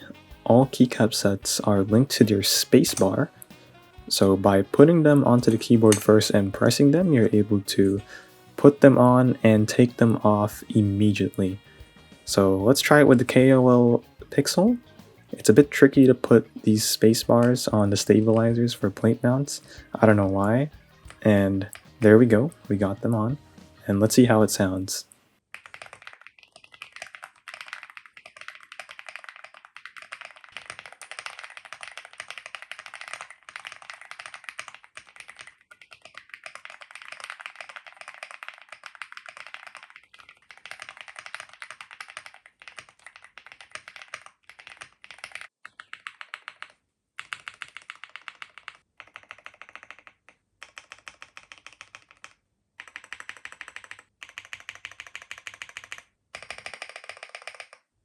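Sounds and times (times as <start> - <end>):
mechanical keyboard typing: 25.6 - 57.8.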